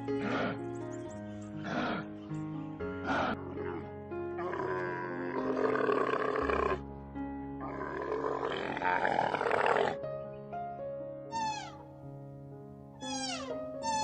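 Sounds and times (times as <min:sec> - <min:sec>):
background music: 0:00.0 - 0:14.0
rough animal roars: 0:03.1 - 0:06.8, 0:07.6 - 0:10.0.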